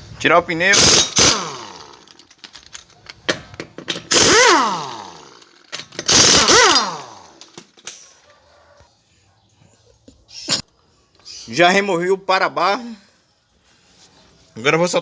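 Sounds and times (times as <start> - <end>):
pneumatic impact wrench: 0.8 - 2.2, 3.2 - 8.2.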